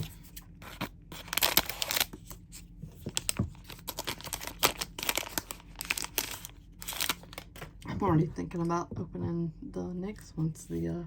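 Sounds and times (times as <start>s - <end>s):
plastic wrapper tearing and crinkling: 0.7s - 2.5s, 3.1s - 7.7s.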